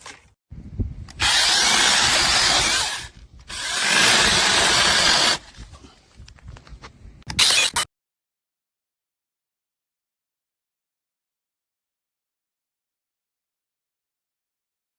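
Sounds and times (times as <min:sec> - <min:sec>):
mini chainsaw cutting wood: 0:01.2 - 0:05.6.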